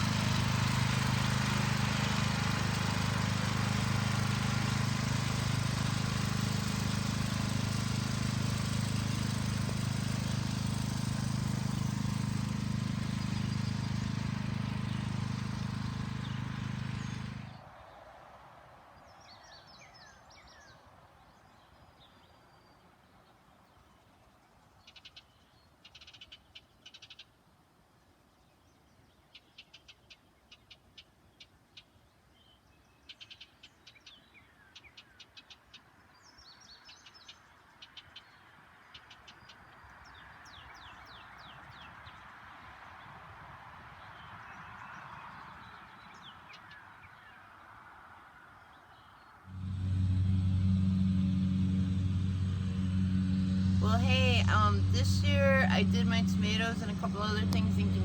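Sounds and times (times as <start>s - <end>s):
lawn mower engine running: 0.0s - 17.6s, 49.5s - 58.0s.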